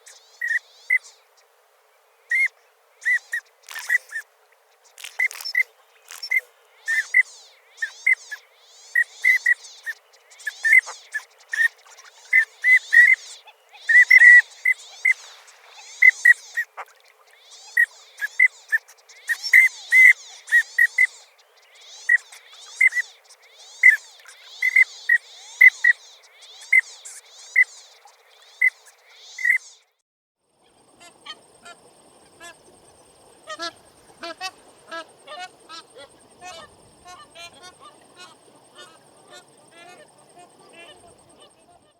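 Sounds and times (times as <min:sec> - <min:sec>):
faint steady hiss: 0:00.0 - 0:29.9, 0:30.5 - 0:41.9
short high-pitched bird calls: 0:02.3 - 0:04.2, 0:04.9 - 0:21.2
waterfowl honking: 0:05.0 - 0:07.2, 0:10.6 - 0:15.2, 0:33.5 - 0:41.9.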